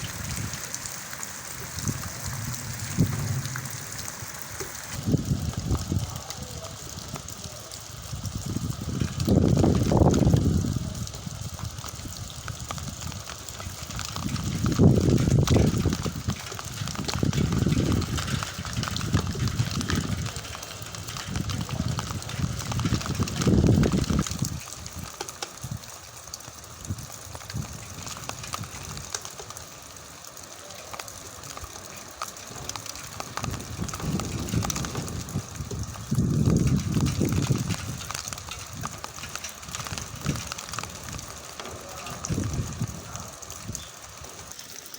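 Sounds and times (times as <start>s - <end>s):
low rumbling swells: 0.0s - 5.9s
rain hissing: 0.0s - 44.9s.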